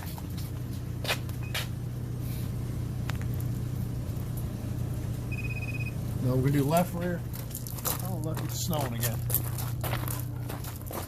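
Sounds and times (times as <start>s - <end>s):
steady low hum: 0.0s - 11.0s
electronic beep: 5.3s - 6.0s.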